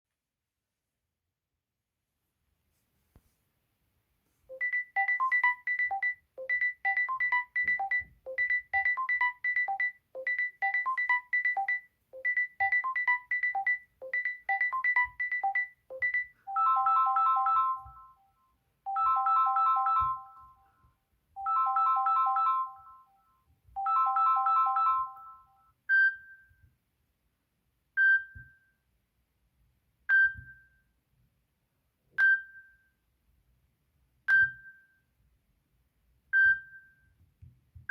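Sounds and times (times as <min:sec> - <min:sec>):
phone ringtone melodic phrase: 0:04.6 - 0:18.2, 0:18.9 - 0:20.6, 0:21.4 - 0:23.1, 0:23.8 - 0:25.5.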